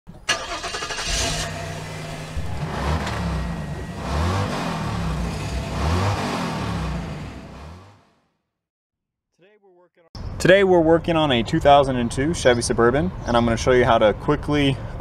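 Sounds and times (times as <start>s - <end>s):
car engine revving: 0.3s - 8.1s.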